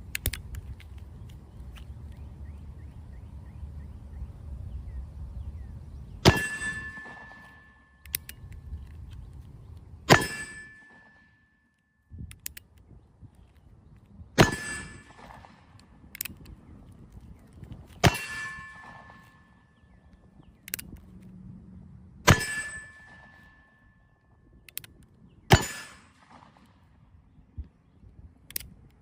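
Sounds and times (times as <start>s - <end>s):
sharp metallic clangs: 6.2s - 8.0s, 10.1s - 11.5s, 14.4s - 15.3s, 18.0s - 19.8s, 22.3s - 24.1s, 25.5s - 26.2s.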